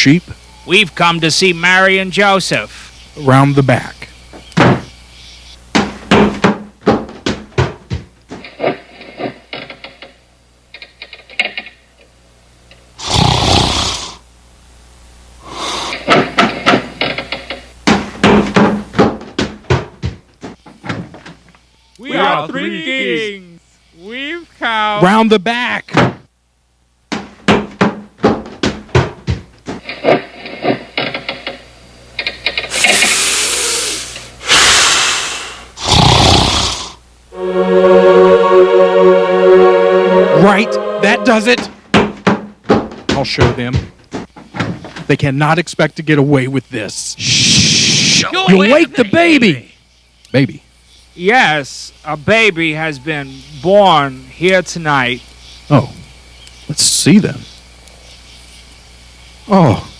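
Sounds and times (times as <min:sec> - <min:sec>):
sharp knocks on wood: 0:04.6 - 0:04.9, 0:05.7 - 0:08.4, 0:16.1 - 0:20.2, 0:27.1 - 0:31.6, 0:41.9 - 0:45.0
knocking on wooden door: 0:05.8 - 0:08.1, 0:27.1 - 0:29.5, 0:42.0 - 0:43.9
loud rasping burst: 0:32.6 - 0:36.8.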